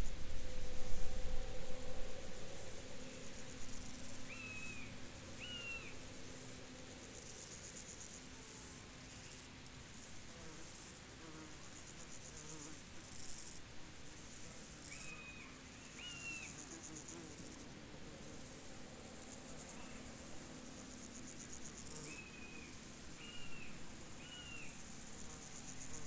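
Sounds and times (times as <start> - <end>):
faint low drone: 0.0 - 8.6
insects trilling in bursts: 0.0 - 26.0.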